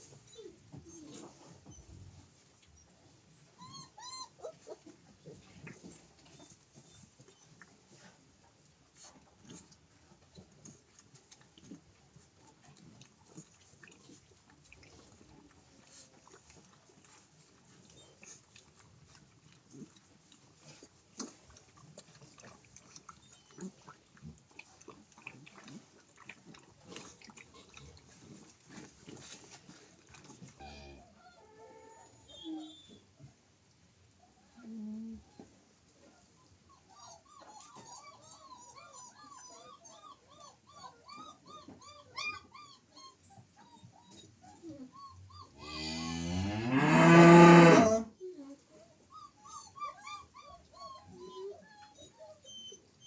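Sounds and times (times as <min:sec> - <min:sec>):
dog whining: 0:00.2 - 0:02.2, 0:02.8 - 0:05.0, 0:30.6 - 0:33.1, 0:36.7 - 0:45.9, 0:46.7 - 0:48.1, 0:49.1 - 0:53.0
faint clicks and rustles: 0:04.5 - 0:30.6
farm animals making short noises: 0:45.6 - 0:48.1.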